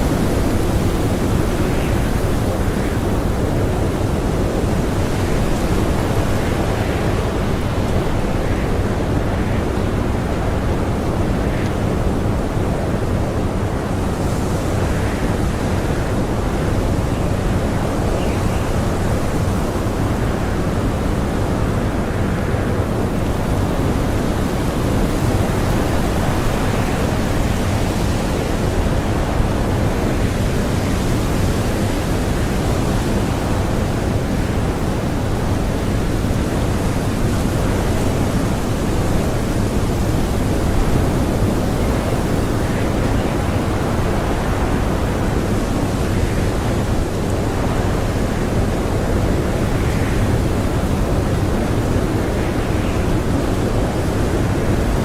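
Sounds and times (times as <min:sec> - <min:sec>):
strong blizzard wind: 0:00.0 - 0:55.0.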